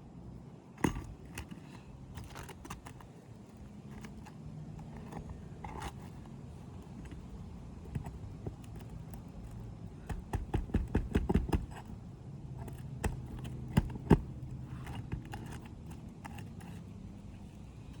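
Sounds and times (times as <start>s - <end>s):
low steady hum: 0.0s - 18.0s
roofing tools knocking on shingles: 10.0s - 12.0s, 12.6s - 15.5s.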